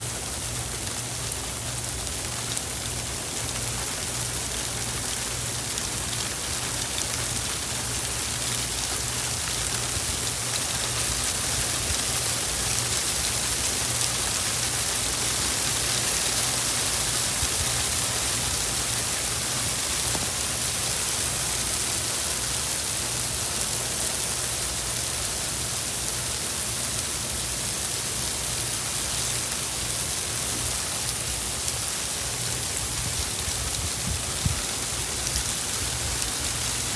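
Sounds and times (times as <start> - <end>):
hiss of wind-driven snow: 0.0 - 36.9.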